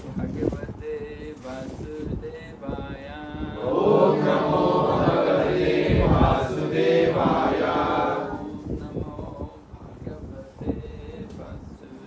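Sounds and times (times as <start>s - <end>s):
group chanting: 3.6s - 8.6s.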